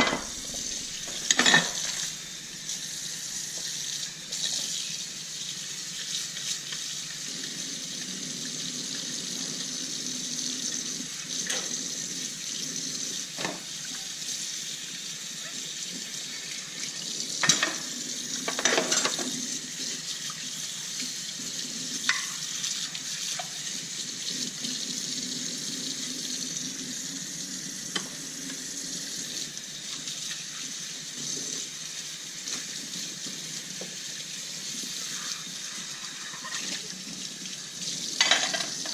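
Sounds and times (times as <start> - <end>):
dishes clinking and knocking: 0.0 - 0.4, 1.1 - 2.0, 17.4 - 19.3, 38.2 - 38.9
tap water running into sink: 0.0 - 38.9.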